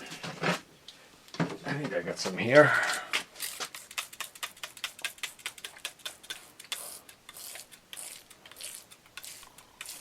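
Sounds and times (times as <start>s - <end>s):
spray bottle squirts: 3.4s - 10.0s.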